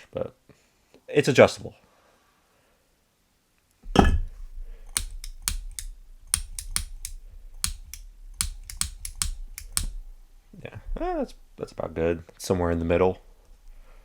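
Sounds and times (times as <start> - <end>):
lighter clicking: 4.9 - 10.1.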